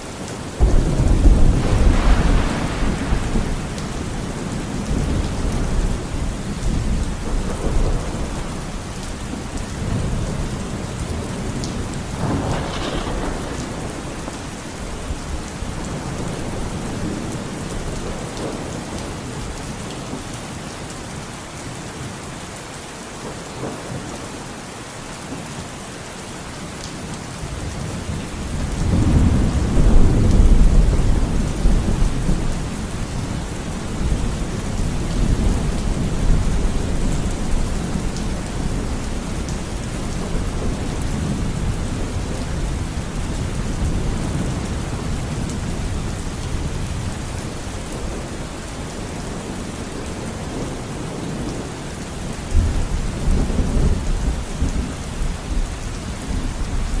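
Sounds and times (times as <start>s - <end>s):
steady rain: 0.0s - 57.0s
rolling thunder: 0.6s - 8.6s, 9.8s - 18.8s, 28.4s - 48.3s.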